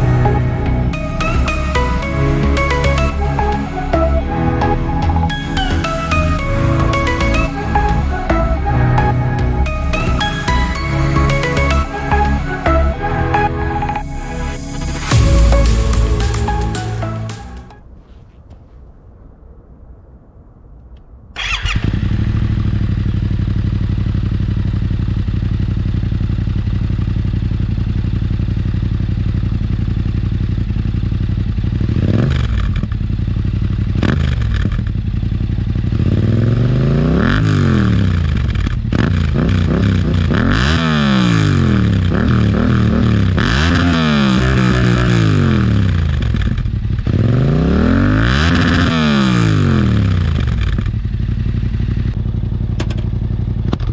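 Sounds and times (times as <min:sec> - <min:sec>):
motorcycle engine idling and revving: 0:21.4 - 0:53.9.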